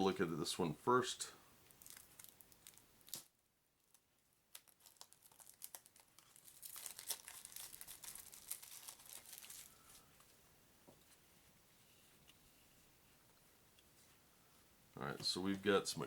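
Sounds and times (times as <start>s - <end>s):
cellophane wrap crinkling: 1.6s - 10.3s.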